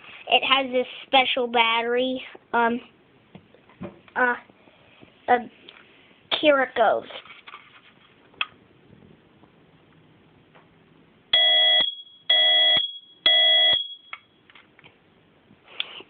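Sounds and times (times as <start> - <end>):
smoke alarm beeping: 11.3 - 14.4.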